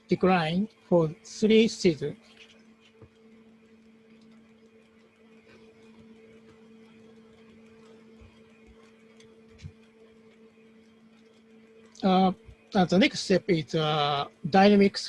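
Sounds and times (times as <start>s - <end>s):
electrical hum: 0.0s - 15.0s
faint ticks: 2.4s - 12.0s.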